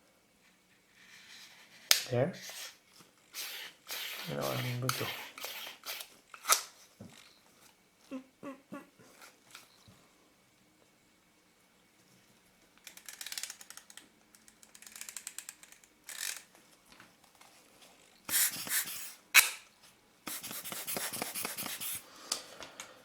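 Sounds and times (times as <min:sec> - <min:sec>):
scraping and hissing noise: 0:03.4 - 0:06.1, 0:18.3 - 0:19.2, 0:20.3 - 0:22.1.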